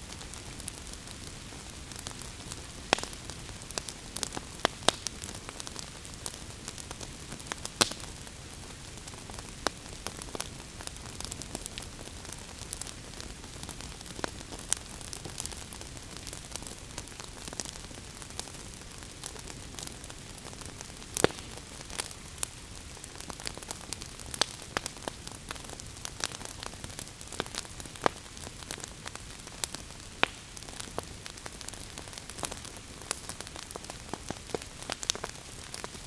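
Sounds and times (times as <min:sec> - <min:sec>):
logs crackling and popping: 0:00.0 - 0:36.0.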